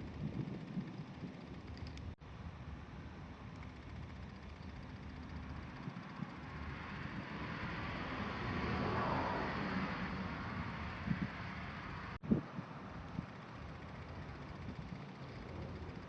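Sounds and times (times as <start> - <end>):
vehicle passing by: 6.1 - 12.2.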